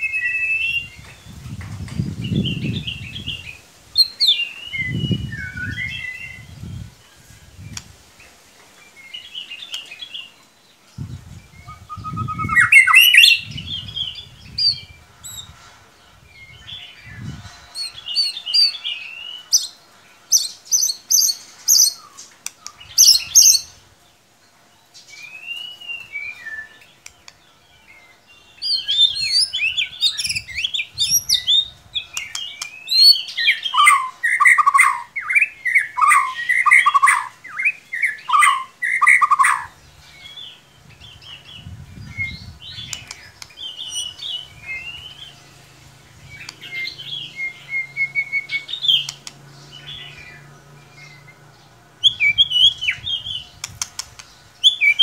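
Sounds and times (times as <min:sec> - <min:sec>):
bird singing whistled song: 0:00.0 - 0:07.0, 0:11.0 - 0:15.5, 0:16.4 - 0:23.8, 0:25.0 - 0:27.2, 0:27.8 - 0:45.4, 0:46.3 - 0:51.4, 0:52.0 - 0:54.0, 0:54.6 - 0:55.0.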